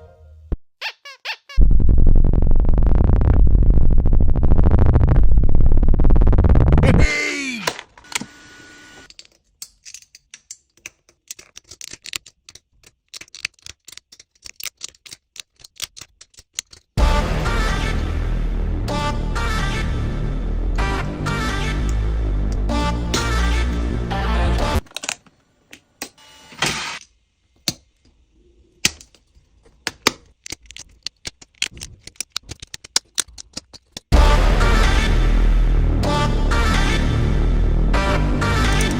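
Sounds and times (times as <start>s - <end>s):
loud electronic music: 17.0s - 24.8s, 34.1s - 38.9s
sharp clicks and clacks: 29.9s - 34.2s.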